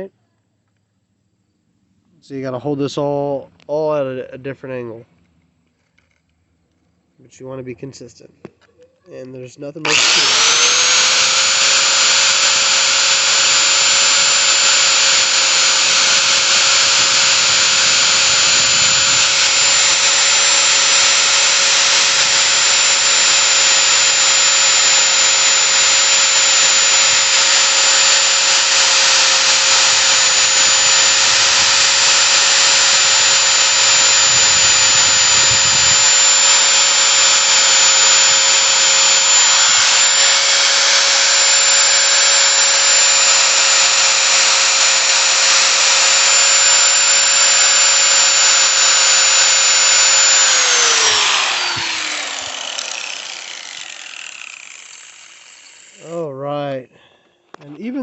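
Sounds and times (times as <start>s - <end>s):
angle grinder whining: 9.8s - 56.2s.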